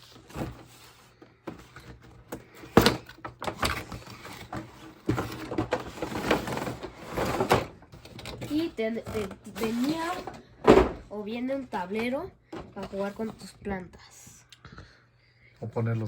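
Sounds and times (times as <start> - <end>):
packaging rustling and clattering: 0.0 - 11.0.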